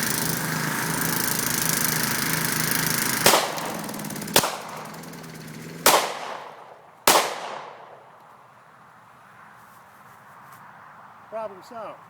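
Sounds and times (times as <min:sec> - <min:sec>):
lawn mower engine running: 0:00.0 - 0:08.4
handgun gunshots: 0:03.2 - 0:03.8, 0:04.4 - 0:04.8, 0:05.9 - 0:08.0.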